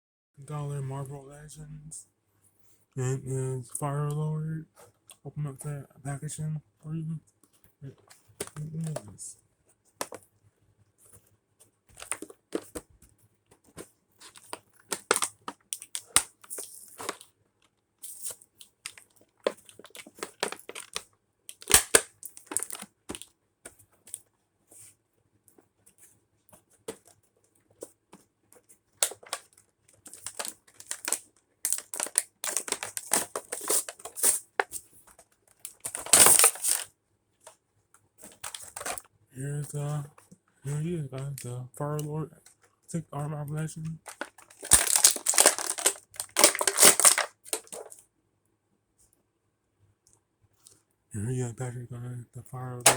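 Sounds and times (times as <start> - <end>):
packaging being torn open: 14.3 - 17.2, 18.0 - 22.9, 30.1 - 34.5, 35.7 - 36.9, 44.1 - 48.0
loud crunching tear: 18.1 - 22.9, 30.1 - 34.6, 35.7 - 36.9, 44.0 - 48.0.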